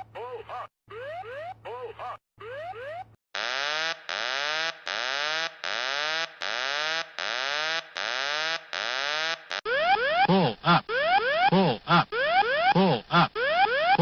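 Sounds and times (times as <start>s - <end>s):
pulsing falling electronic alarm tone: 2.5s - 12.8s, 13.4s - 14.0s.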